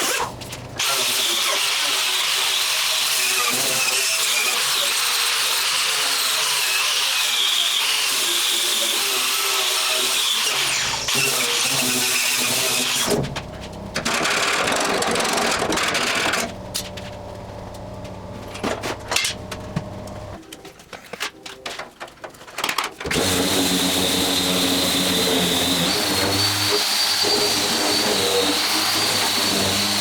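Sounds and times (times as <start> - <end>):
power tool grinding metal: 0.0 - 13.3, 14.0 - 16.5, 23.1 - 30.0
handling clicks and knocks: 15.5 - 23.1.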